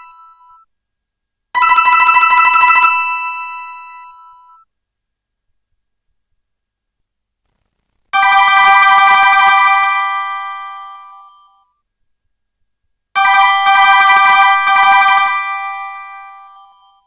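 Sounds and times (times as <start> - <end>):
bell-like electronic ringtone: 0.0 - 0.7, 1.6 - 4.7, 8.2 - 11.8, 13.2 - 17.0.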